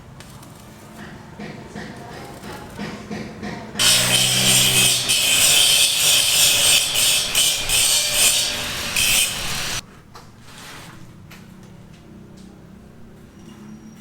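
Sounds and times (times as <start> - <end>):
power tool cutting: 3.8 - 9.8.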